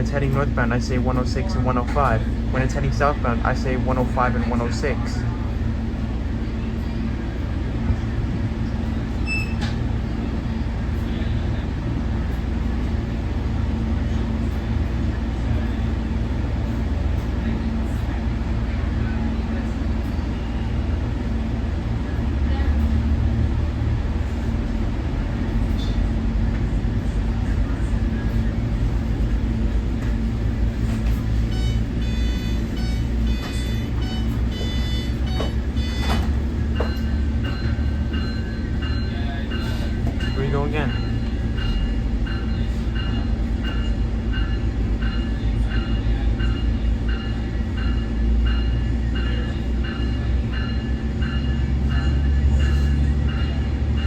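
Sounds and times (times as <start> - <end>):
train rumble and hum: 0.0 - 54.0.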